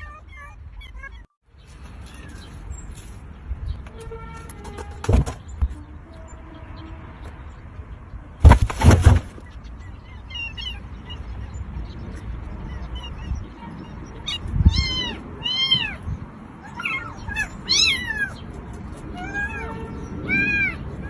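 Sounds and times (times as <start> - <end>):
cat meowing: 12.6 - 18.4, 19.1 - 20.8.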